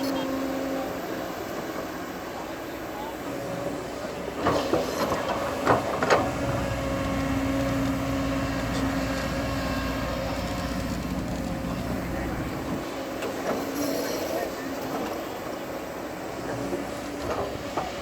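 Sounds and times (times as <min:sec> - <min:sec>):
diesel engine running under load: 0:03.1 - 0:13.2.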